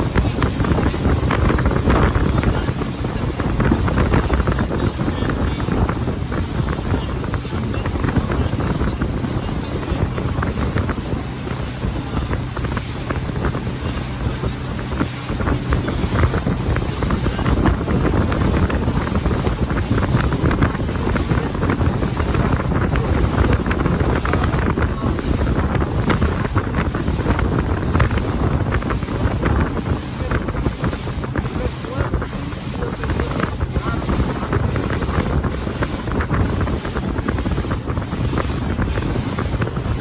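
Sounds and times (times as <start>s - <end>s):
boat engine humming: 0.0s - 40.0s
wind buffeting microphone: 0.0s - 40.0s
water rushing past: 8.1s - 40.0s.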